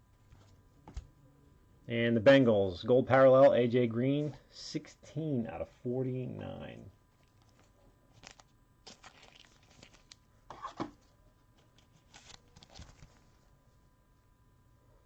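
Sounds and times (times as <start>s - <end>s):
wrapper rustling and crinkling: 7.2s - 10.8s, 11.6s - 13.4s.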